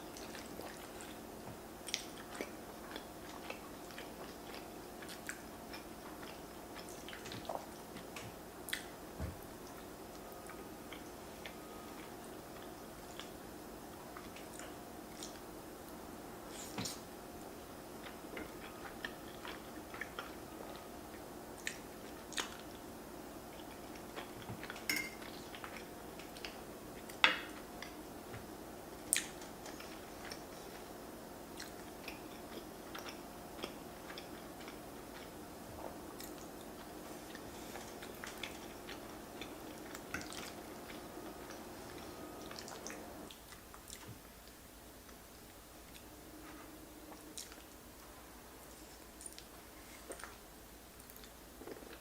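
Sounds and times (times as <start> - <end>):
steady low hum: 0.0 - 52.0
chewing and biting food: 1.8 - 13.4, 18.0 - 22.8, 23.5 - 30.9, 31.5 - 44.6.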